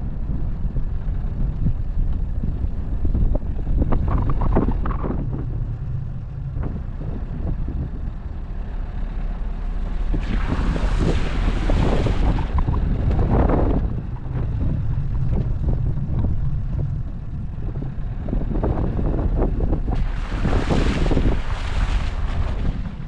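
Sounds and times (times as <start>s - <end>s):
vehicle low rumble: 0.0s - 23.0s.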